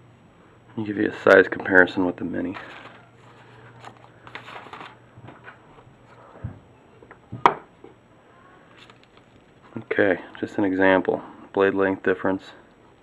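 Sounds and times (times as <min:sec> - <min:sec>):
handling rustle: 0:02.5 - 0:05.5.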